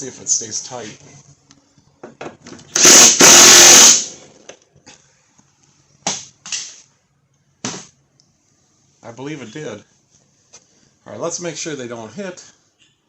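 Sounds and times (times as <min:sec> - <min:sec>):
impact wrench: 0:02.8 - 0:04.1.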